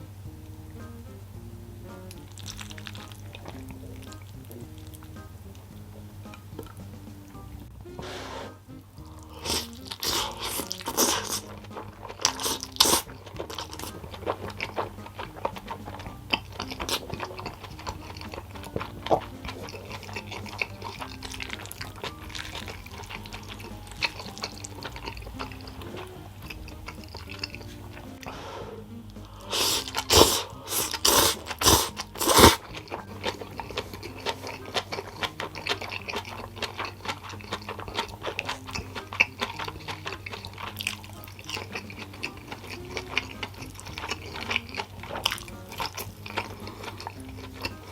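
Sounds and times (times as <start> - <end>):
soft background music: 0.0 - 47.9
crisp crunching: 9.1 - 28.3, 29.2 - 47.9.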